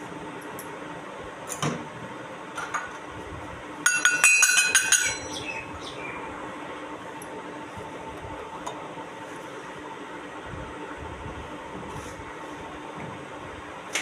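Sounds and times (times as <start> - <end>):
toy kitchenware clinking: 3.9 - 5.4.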